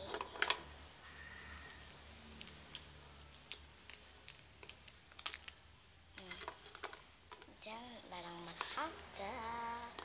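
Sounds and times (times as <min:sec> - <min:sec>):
small objects clicking: 0:01.4 - 0:07.6.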